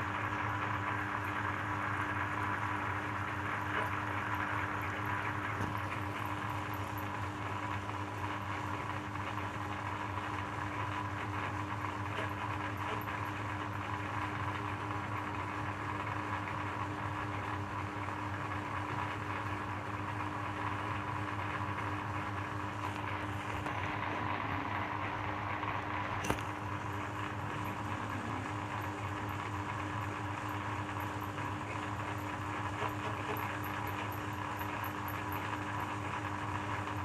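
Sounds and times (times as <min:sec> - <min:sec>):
electric shredder humming: 0:21.8 - 0:37.0.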